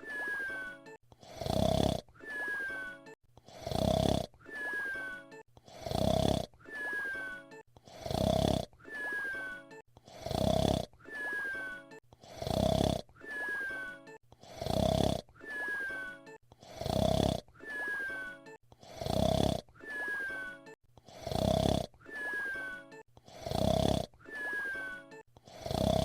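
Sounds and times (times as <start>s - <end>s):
thin falling whistle: 0.0s - 0.8s, 2.2s - 3.0s, 4.5s - 5.3s, 6.7s - 7.5s, 11.1s - 11.8s, 13.3s - 14.0s, 17.6s - 18.4s, 19.9s - 20.6s, 22.1s - 22.8s, 24.3s - 25.0s
loud snore: 0.0s - 5.0s, 5.7s - 26.0s.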